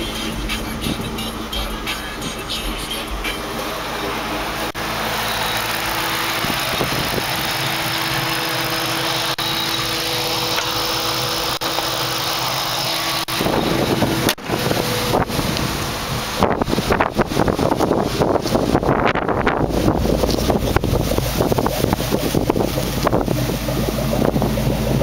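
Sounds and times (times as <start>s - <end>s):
car engine idling: 0.0s - 25.0s
wind noise on microphone: 6.3s - 7.6s, 13.2s - 25.0s.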